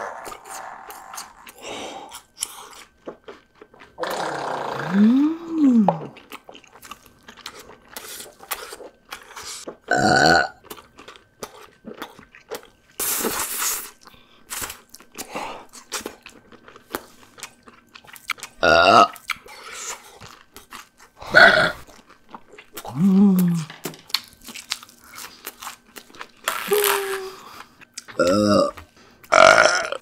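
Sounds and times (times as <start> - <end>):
chewing crunchy food: 0.0 - 4.3, 6.0 - 30.0
loud burps: 4.0 - 6.1, 9.9 - 10.6, 18.6 - 19.1, 21.2 - 21.8, 28.2 - 30.0.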